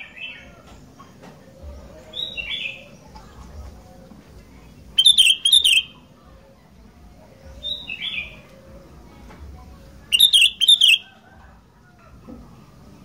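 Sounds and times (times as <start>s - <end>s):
bird singing: 0.0s - 3.1s, 4.8s - 6.2s, 10.0s - 11.2s.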